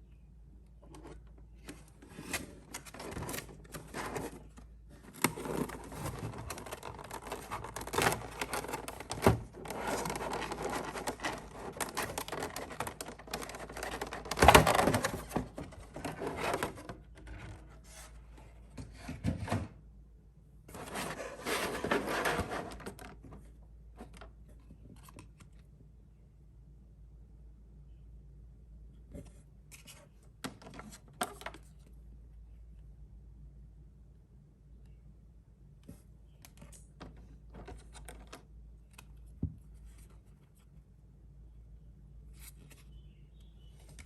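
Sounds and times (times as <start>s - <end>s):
packaging rustling and scraping: 0.9s - 18.2s, 20.7s - 23.4s.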